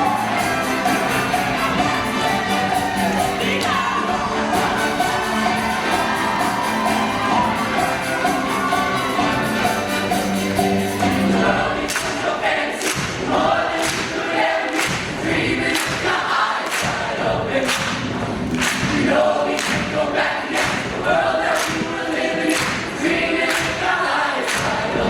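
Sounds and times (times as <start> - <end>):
band playing: 0.0 - 12.2
sharp percussion hits: 0.0 - 12.3
choir singing in harmony: 0.0 - 25.0.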